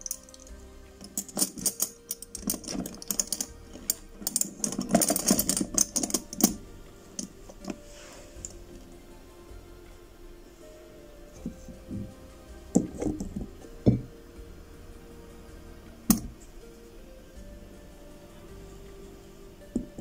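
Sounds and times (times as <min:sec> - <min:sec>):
sharp clicks and rattles: 0:00.0 - 0:06.6.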